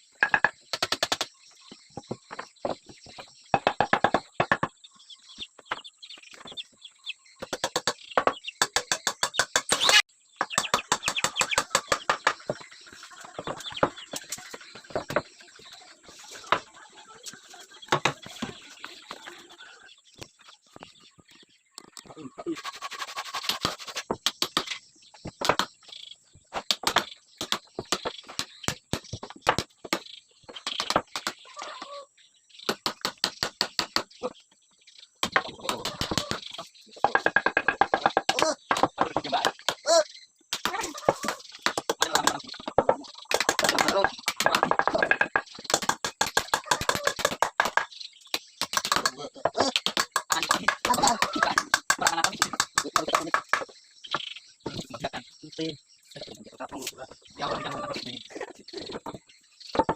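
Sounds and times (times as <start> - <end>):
hammering on wooden frame: 7.4 - 12.6, 32.7 - 34.1, 35.2 - 39.9, 40.5 - 47.9, 48.6 - 53.7
voices: 11.3 - 20.1, 35.4 - 37.4, 38.3 - 45.4, 48.9 - 53.6, 54.7 - 59.2
rapid irregular clicks and knocks: 40.5 - 53.8.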